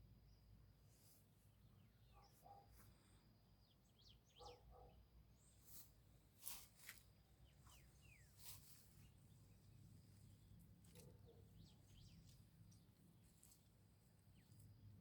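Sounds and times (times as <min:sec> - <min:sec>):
faint bird chirps: 0:01.6 - 0:05.8, 0:06.8 - 0:13.5.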